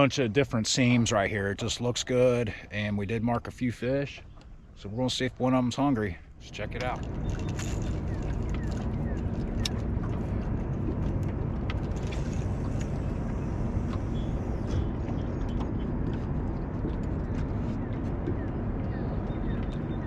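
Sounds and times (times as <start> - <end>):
boat motor running: 6.4 - 20.0.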